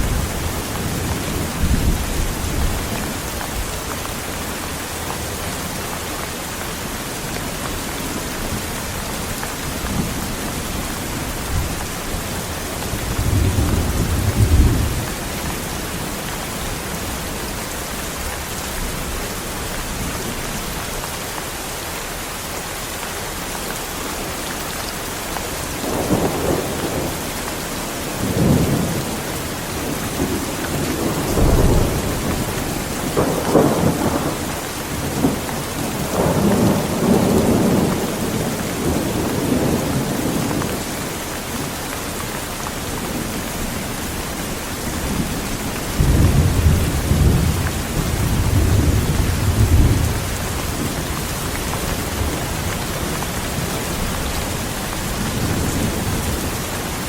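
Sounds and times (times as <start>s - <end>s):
thunder rumbling: 0.0s - 3.8s, 7.3s - 17.4s, 25.8s - 27.3s, 29.8s - 40.9s, 43.0s - 57.0s
heavy rain: 0.0s - 57.0s.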